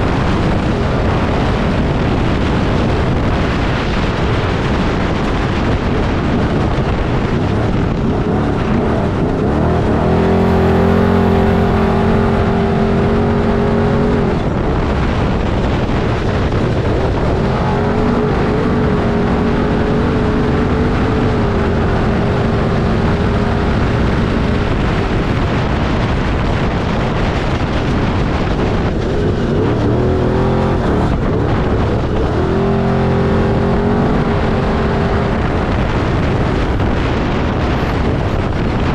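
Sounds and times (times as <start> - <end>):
wind rushing: 0.0 - 38.9
rough ground noise: 4.7 - 38.9.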